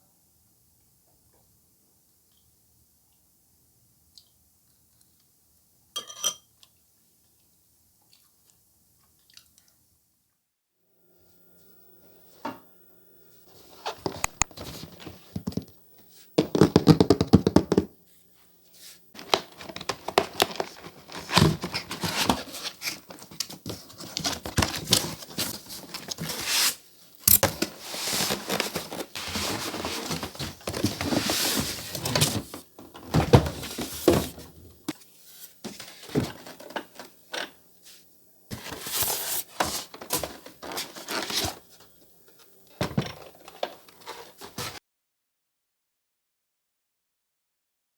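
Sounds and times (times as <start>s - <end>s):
crinkling: 19.2s - 32.6s.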